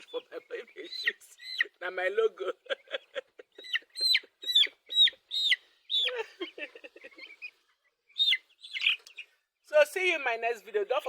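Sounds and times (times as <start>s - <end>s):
chicks peeping: 0.0s - 1.9s, 3.0s - 9.5s.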